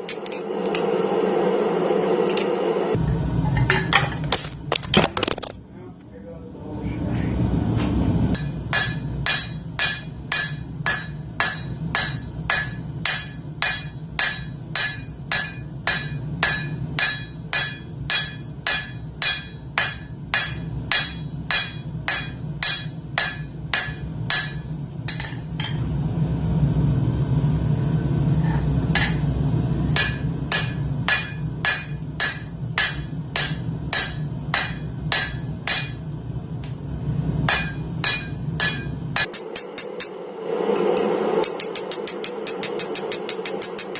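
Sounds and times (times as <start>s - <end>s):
forge burner roar: 0.0s - 5.0s, 5.6s - 43.9s
hammer ringing on anvil: 8.4s - 25.8s, 30.0s - 36.1s, 37.5s - 40.2s, 40.8s - 43.9s.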